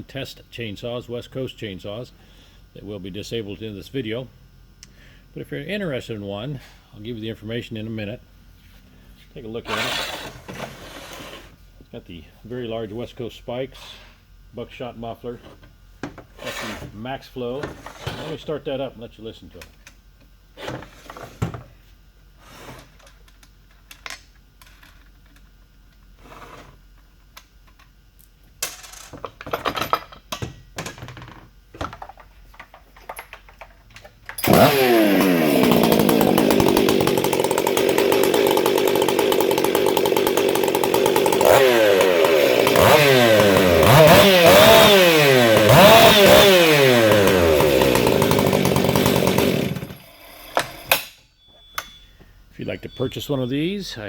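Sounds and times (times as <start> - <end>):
chainsaw engine revving: 9.7 - 10.4, 34.4 - 51.0.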